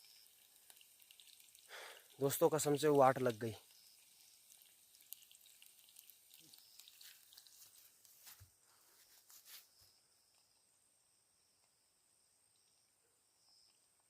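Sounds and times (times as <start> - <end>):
insect chirring: 0.0 - 8.0
faint clicks and crackles: 3.6 - 8.4.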